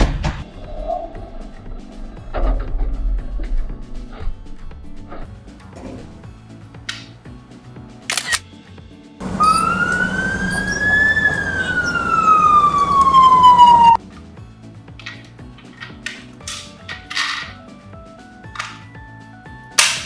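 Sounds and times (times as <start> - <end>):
quiet background music: 0.0 - 20.0
sharp click: 8.1 - 8.4
toy electronic siren wail: 9.2 - 14.0.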